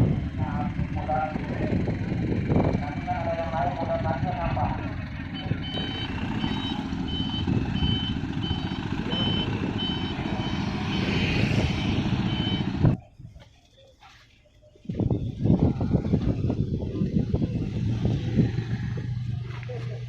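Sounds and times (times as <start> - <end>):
engine rumble: 0.0 - 20.0
repeating electronic beep: 5.3 - 13.0.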